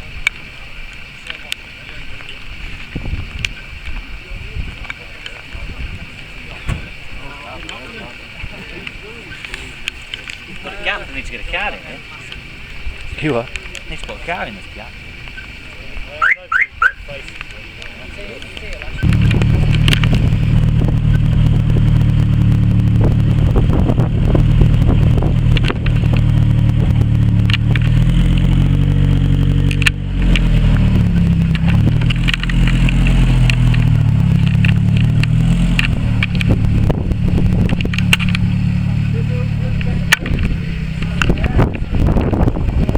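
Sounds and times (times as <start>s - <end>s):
crackles and clicks: 16.6s - 42.9s
car engine running: 18.8s - 42.9s.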